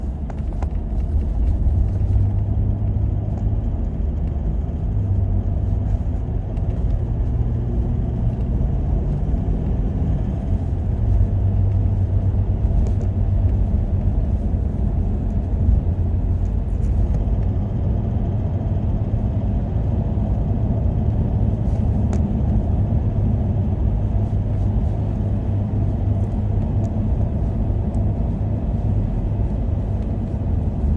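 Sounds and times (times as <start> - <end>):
diesel engine running: 0.0 - 30.9
engine ticking noise: 0.0 - 30.9.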